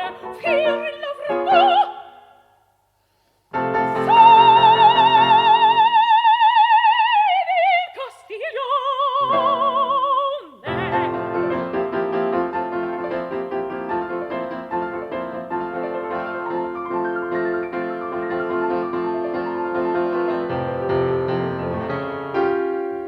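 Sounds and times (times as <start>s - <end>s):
piano playing: 0.0s - 2.0s, 3.5s - 6.0s, 9.2s - 23.0s
soprano singing with vibrato: 0.0s - 2.4s, 3.8s - 11.7s.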